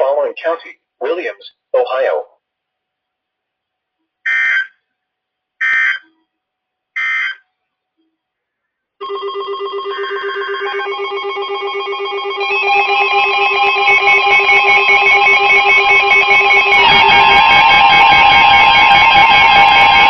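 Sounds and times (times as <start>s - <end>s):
warbling digital data tone: 9.0s - 20.0s
guitar music: 10.0s - 20.0s.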